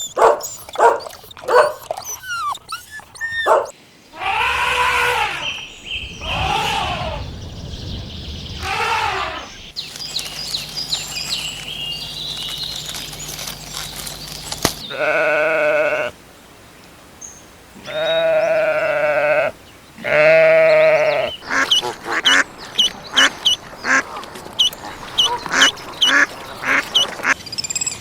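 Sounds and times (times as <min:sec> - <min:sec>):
dog whining and yelping: 0:00.0 - 0:03.7, 0:24.6 - 0:27.1
animal long rising falling calls: 0:04.1 - 0:09.7.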